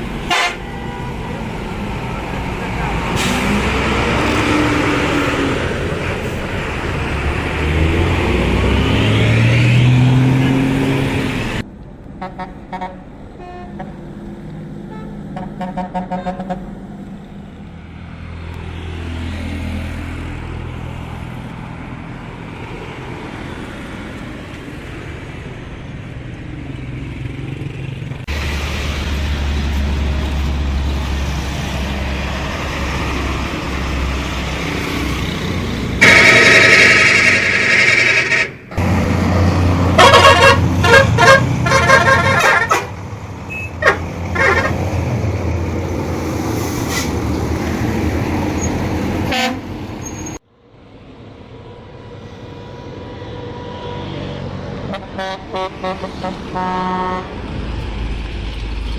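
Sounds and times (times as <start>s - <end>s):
bus engine revving: 0.0s - 50.4s
traffic noise: 0.0s - 58.9s
horn toots: 0.3s - 1.2s, 14.9s - 16.7s, 36.0s - 38.8s, 39.9s - 44.8s, 49.2s - 50.3s, 54.9s - 57.3s.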